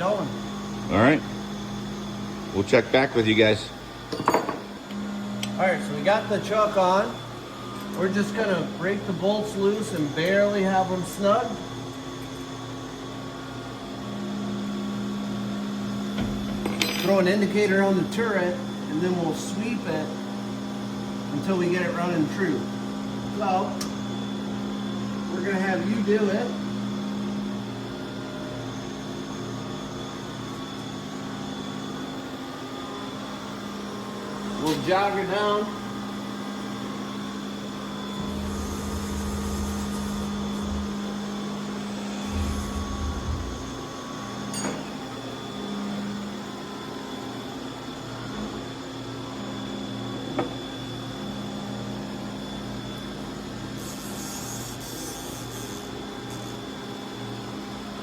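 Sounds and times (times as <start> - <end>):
machine shop equipment humming: 0.0 - 58.0
faint high whine: 37.6 - 43.9.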